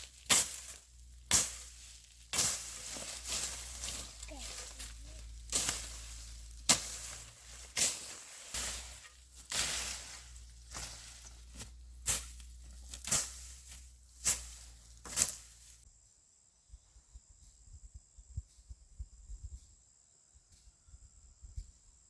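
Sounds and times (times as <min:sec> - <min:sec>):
hand tool striking: 0:00.0 - 0:15.6.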